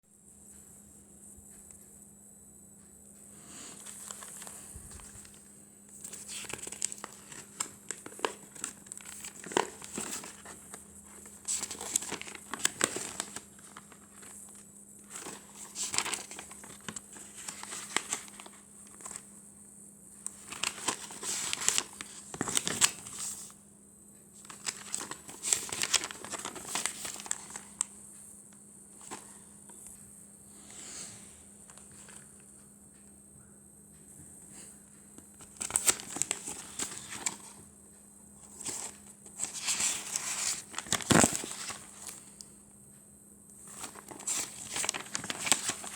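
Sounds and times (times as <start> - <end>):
faint steady hum: 0.0 - 45.9
paper rustling and crinkling: 3.5 - 19.3, 20.2 - 23.6, 24.4 - 27.9, 29.0 - 29.5, 35.4 - 37.7, 38.4 - 42.4, 43.6 - 45.9.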